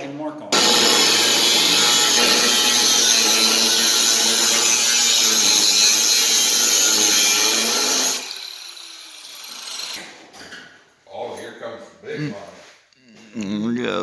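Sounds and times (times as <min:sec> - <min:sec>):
power tool on metal winding down: 0:00.6 - 0:10.1.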